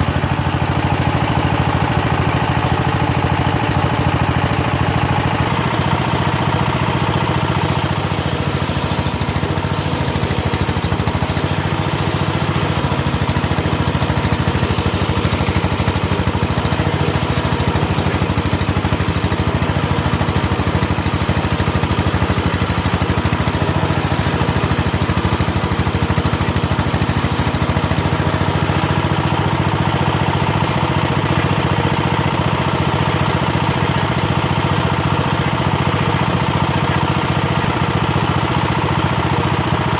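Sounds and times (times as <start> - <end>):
circular saw engine running: 0.0 - 39.9
bright hiss: 6.6 - 16.0, 20.0 - 28.8.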